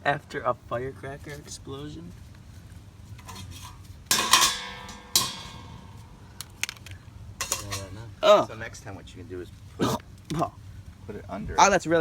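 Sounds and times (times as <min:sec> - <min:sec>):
sharp metallic clanks ringing: 0:03.2 - 0:06.5, 0:07.4 - 0:08.1.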